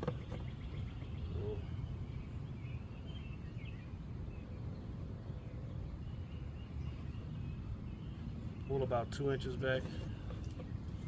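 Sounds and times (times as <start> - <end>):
outdoor background noise: 0.0 - 11.0.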